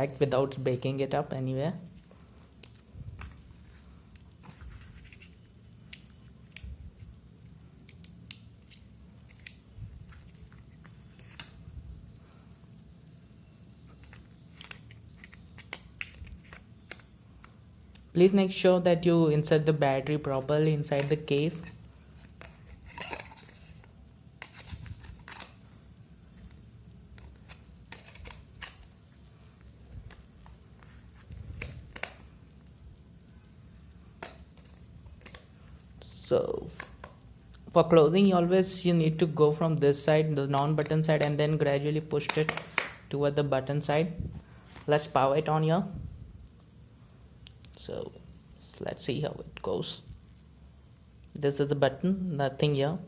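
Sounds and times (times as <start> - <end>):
handling rustle: 1.9 - 5.5.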